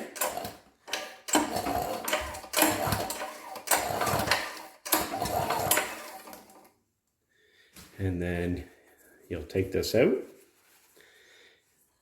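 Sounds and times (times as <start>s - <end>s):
engine cranking without firing: 0.0s - 6.7s
recoil starter cord pulled: 0.0s - 6.7s.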